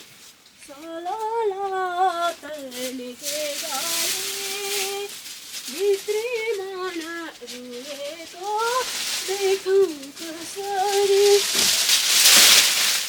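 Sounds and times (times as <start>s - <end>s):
rustling hiss: 0.0s - 13.0s
person humming wordless tune: 0.7s - 5.1s, 5.7s - 11.6s.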